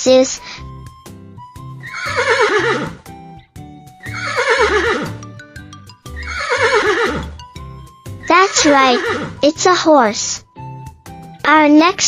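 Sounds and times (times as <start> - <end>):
light background music with beat: 0.6 - 12.0
horse neighing: 1.8 - 3.1, 4.0 - 5.2, 6.2 - 7.4, 8.4 - 9.4.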